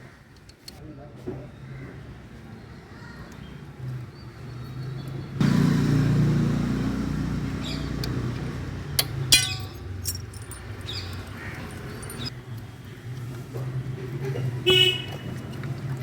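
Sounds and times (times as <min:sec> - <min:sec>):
traffic hum: 0:03.7 - 0:16.0
sharp metal clinks: 0:09.0 - 0:12.3.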